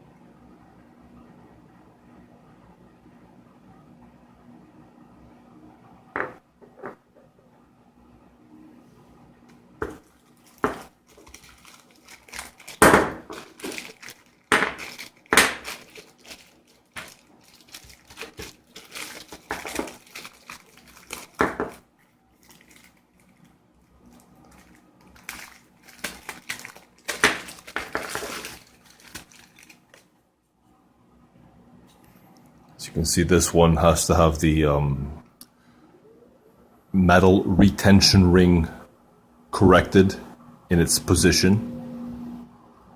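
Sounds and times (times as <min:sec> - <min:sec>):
plastic bags crinkling and tearing: 0:10.0 - 0:30.1.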